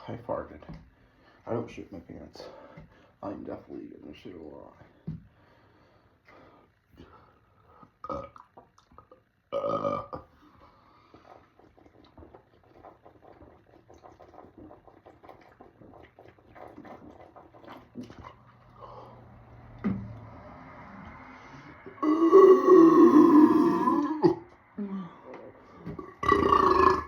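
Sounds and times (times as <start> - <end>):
man burping loudly: 8.0 - 10.3, 22.0 - 24.5, 26.0 - 27.0.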